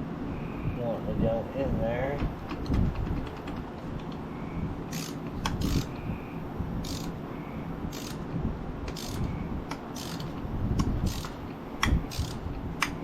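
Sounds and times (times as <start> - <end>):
shop fan humming: 0.0 - 13.0
ratchet wrench clicking: 4.9 - 6.0, 6.8 - 7.2, 7.9 - 8.2, 8.9 - 13.0.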